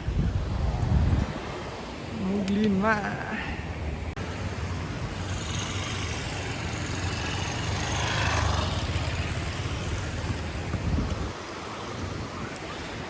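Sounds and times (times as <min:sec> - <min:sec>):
motorcycle engine running: 0:04.6 - 0:11.2.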